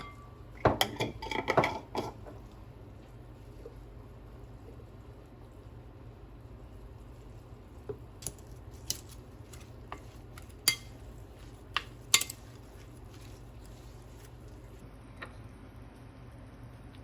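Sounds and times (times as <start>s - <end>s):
utensils clinking against dishes: 10.0s - 11.0s, 11.7s - 13.3s.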